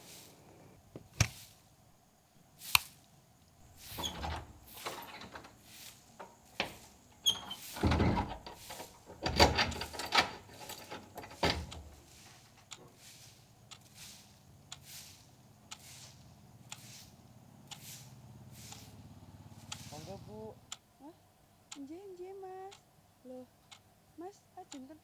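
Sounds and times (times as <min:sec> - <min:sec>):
rustling: 0:03.6 - 0:20.4
door clicks and knocks: 0:04.0 - 0:05.6, 0:06.2 - 0:11.9.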